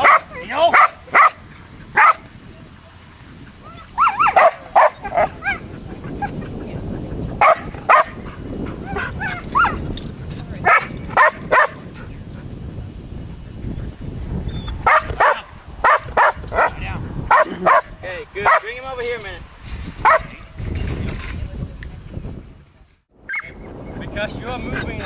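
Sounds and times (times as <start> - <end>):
dog barking and yipping: 0.0 - 2.3, 3.6 - 6.5, 7.4 - 10.0, 10.6 - 11.8, 14.6 - 18.8, 20.0 - 20.4.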